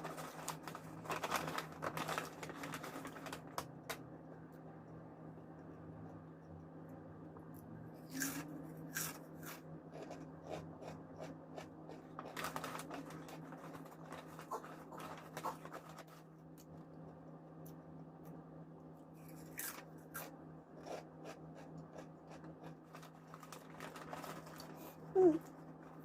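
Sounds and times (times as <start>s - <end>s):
low steady hum: 0.0s - 26.0s
chips crunching: 8.1s - 16.2s, 19.2s - 24.8s.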